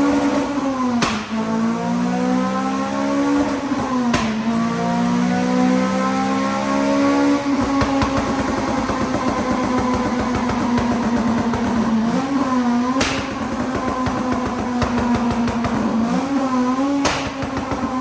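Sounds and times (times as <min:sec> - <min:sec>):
car engine revving under load: 0:00.0 - 0:18.0
sharp crack: 0:00.9 - 0:01.6, 0:03.4 - 0:04.9, 0:07.6 - 0:15.9, 0:17.0 - 0:17.9.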